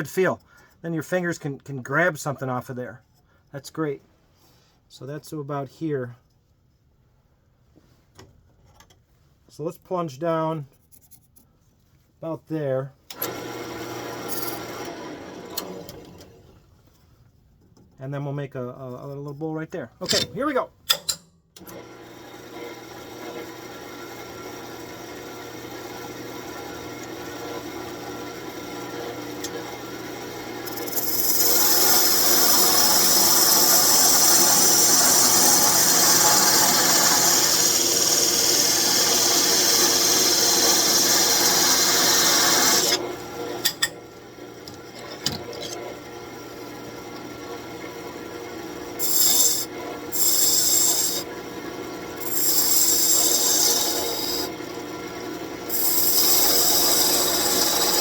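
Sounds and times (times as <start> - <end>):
lathe humming: 21.7 - 43.8, 44.8 - 58.0
gouge scraping wood on a lathe: 30.6 - 43.0, 49.0 - 51.3, 52.2 - 54.5, 55.7 - 58.0.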